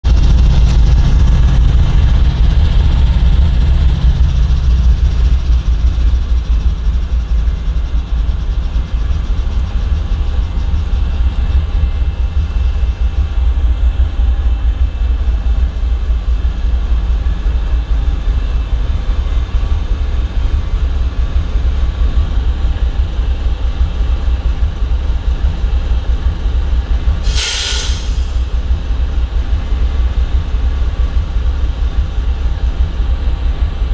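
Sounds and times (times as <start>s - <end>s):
diesel locomotive engine idling: 0.0s - 33.9s
loud air hiss: 27.2s - 28.6s.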